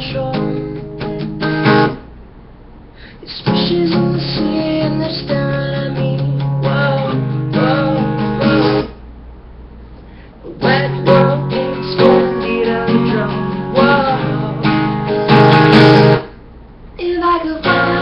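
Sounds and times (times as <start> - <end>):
acoustic guitar strumming: 0.0 - 2.1, 3.4 - 9.0, 10.5 - 16.4, 17.1 - 18.0.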